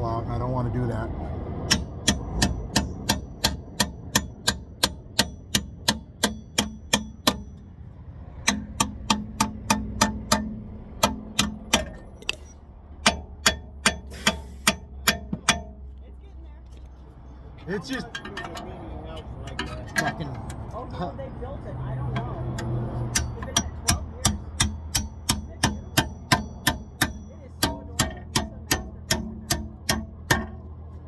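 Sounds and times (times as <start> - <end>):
hammer blows on metal: 1.7 - 7.8, 8.4 - 15.9.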